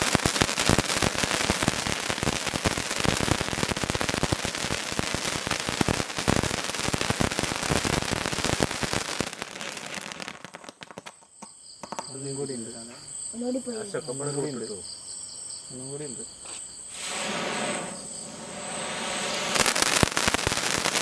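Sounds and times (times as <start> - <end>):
ground firework crackling: 0.0 - 12.2, 16.9 - 21.0.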